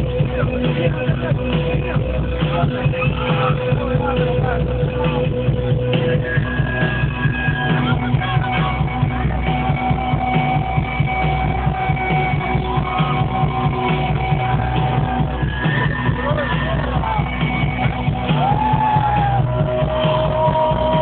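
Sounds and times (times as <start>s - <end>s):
muffled rock band playing live: 0.0s - 21.0s.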